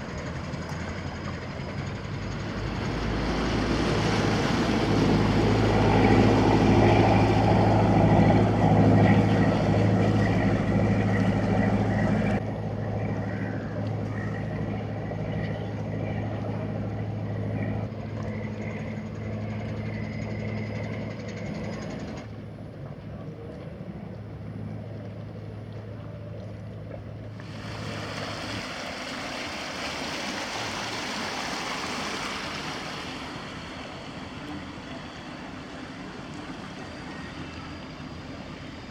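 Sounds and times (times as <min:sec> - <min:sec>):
diesel engine humming: 0:00.0 - 0:22.5, 0:26.8 - 0:38.9
rushing noise: 0:27.5 - 0:38.9.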